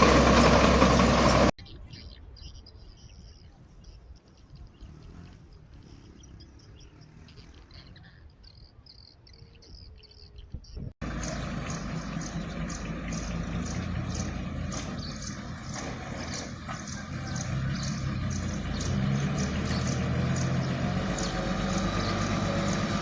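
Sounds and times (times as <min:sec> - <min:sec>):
heavy machine engine running: 0:00.0 - 0:01.6, 0:11.0 - 0:23.0.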